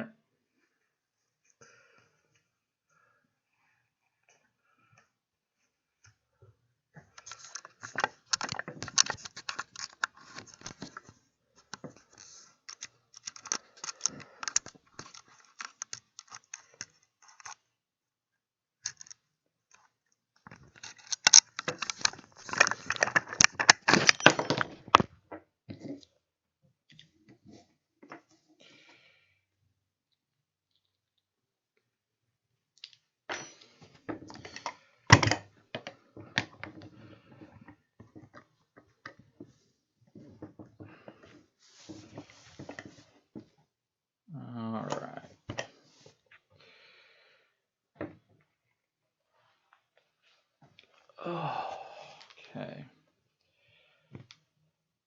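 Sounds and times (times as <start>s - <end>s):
small hard objects clicking and rattling: 7.2s - 10.9s, 12.1s - 17.6s, 20.4s - 25.1s.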